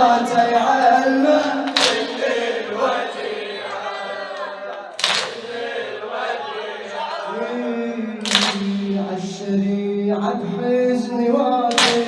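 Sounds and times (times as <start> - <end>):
men chanting in unison: 0.0 - 12.0
chest-beating slaps: 1.7 - 2.4, 5.0 - 5.6, 8.2 - 9.0, 11.7 - 12.0.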